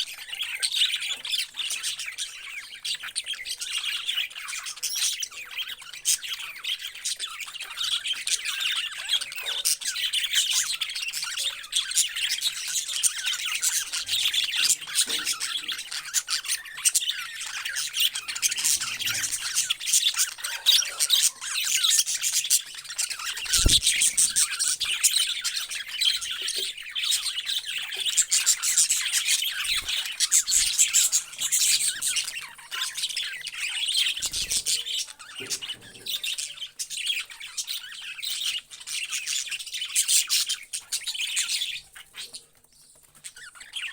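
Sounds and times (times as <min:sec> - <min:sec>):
parrots chattering and squawking: 0:00.0 - 0:43.9.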